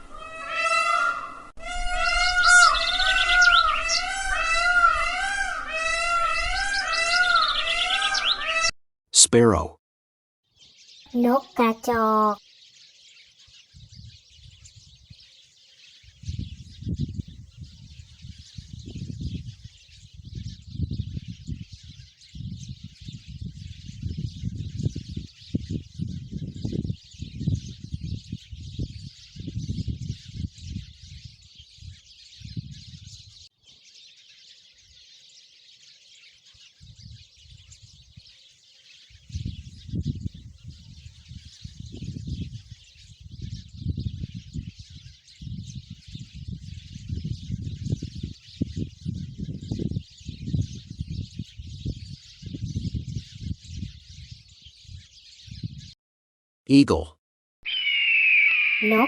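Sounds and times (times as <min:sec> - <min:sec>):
sparrows chirping: 0:10.6 - 0:55.9, 0:57.7 - 0:59.0.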